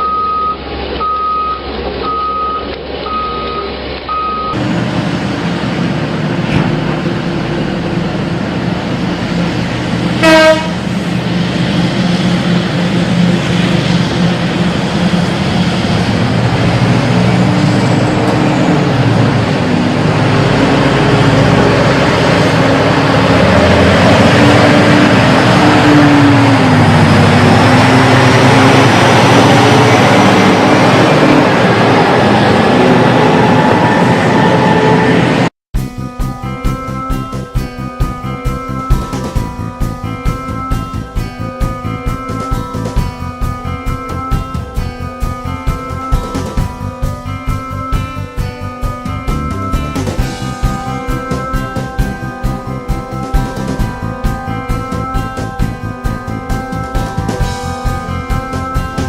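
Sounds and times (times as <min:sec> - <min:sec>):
heavy diesel engine running: 0:00.0 - 0:59.0
short horn toot: 0:10.2 - 0:10.8.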